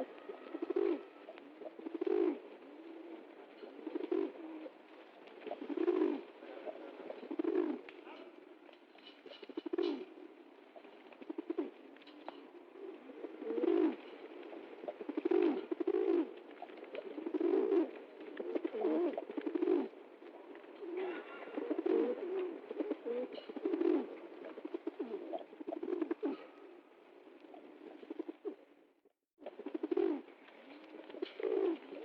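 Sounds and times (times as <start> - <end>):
pigeon cooing: 0.0 - 8.5, 9.2 - 28.7, 29.4 - 32.0.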